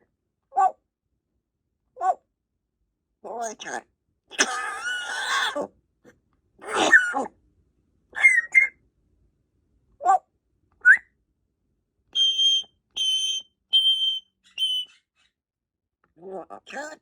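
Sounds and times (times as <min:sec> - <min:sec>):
parrot calling and whistling: 0:08.2 - 0:08.7, 0:12.2 - 0:15.3.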